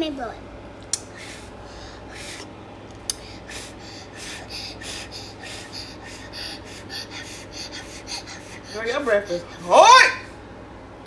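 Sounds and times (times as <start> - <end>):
child blowing puffs of breath: 1.1 - 2.5, 3.1 - 9.2.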